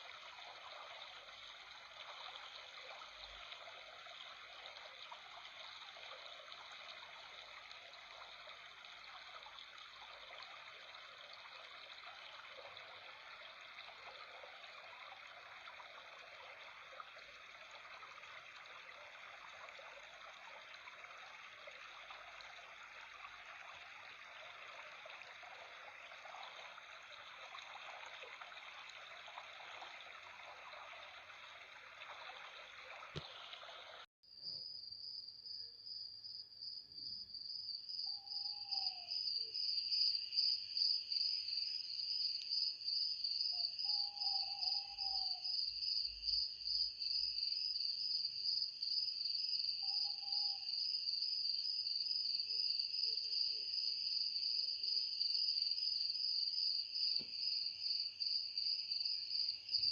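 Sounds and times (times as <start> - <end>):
stream trickling: 0.0 - 34.1, 37.3 - 59.9
crickets chirring: 34.4 - 59.9.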